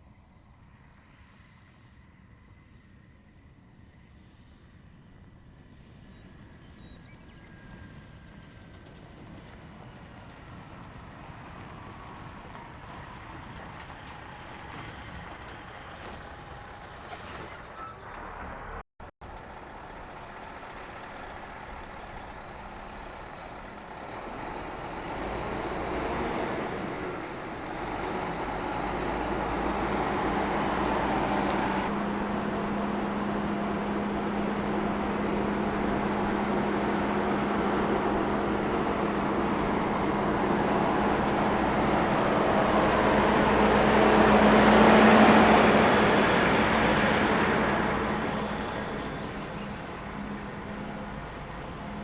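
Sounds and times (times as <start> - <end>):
large diesel vehicle passing: 7.1 - 52.0
steady engine hum: 18.2 - 52.0.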